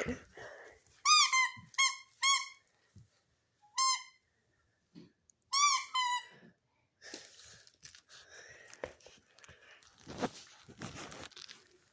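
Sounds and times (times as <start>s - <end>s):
rustling and tearing: 7.1s - 11.9s.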